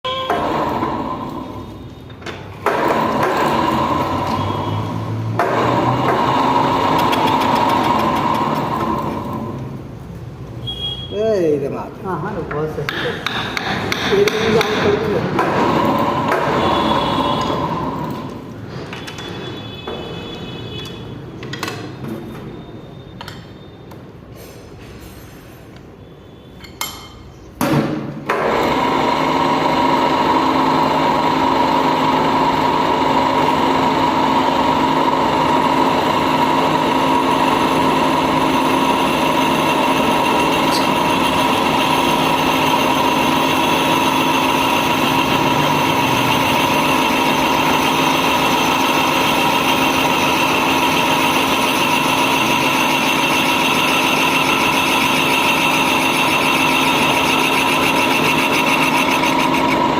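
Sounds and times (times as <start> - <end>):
lathe humming and whining: 5.5 - 9.8, 28.4 - 59.9.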